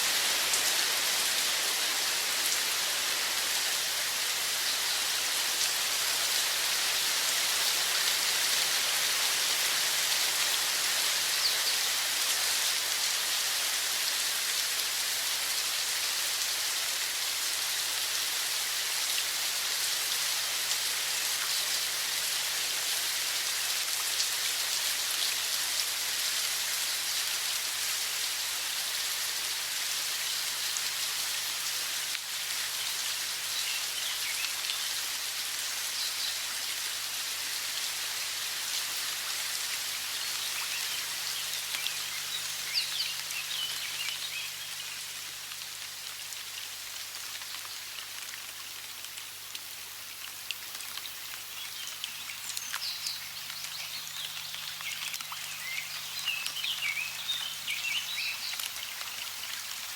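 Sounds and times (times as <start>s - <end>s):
running water rushing: 0.0s - 59.9s
small birds chirping: 40.0s - 45.1s, 50.9s - 59.5s.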